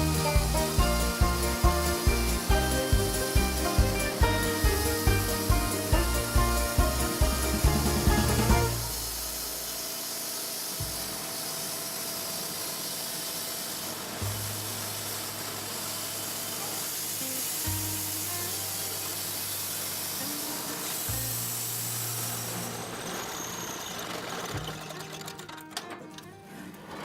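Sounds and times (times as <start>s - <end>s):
background music with low bass: 0.0s - 9.0s
steady hiss: 0.0s - 23.8s.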